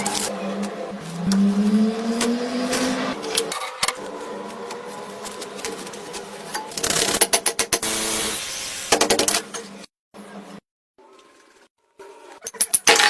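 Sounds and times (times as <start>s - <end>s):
electric motor humming: 7.8s - 8.8s.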